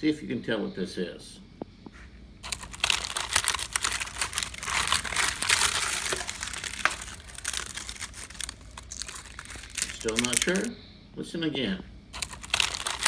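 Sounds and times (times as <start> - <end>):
termites clicking in wood: 2.4 - 10.7.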